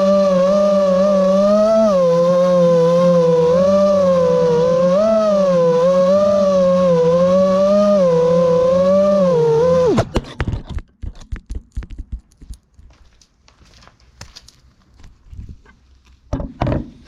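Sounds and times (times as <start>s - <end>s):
drone motors whining: 0.0s - 10.2s.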